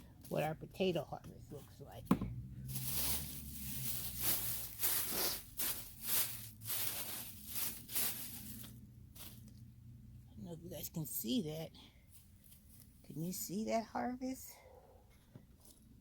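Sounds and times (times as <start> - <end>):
bag rustling and crinkling: 2.6 - 9.5.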